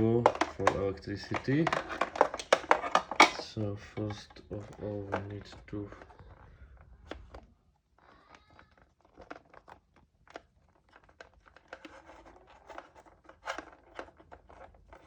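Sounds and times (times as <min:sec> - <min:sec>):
faint plastic clicks and crinkling: 0:00.0 - 0:15.0.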